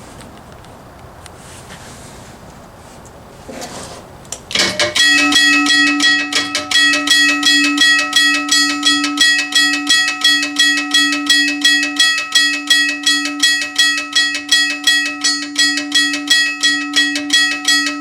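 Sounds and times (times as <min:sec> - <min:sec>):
railroad crossing bell ringing: 0:04.5 - 0:18.0.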